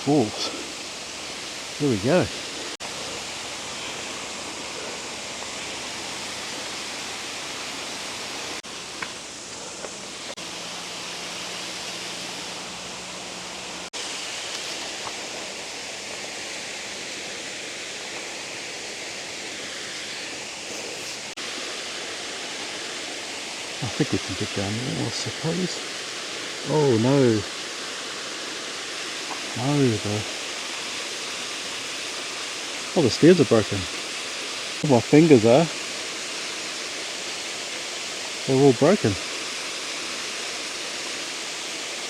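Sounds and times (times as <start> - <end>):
waterfall rushing: 0.0 - 42.0.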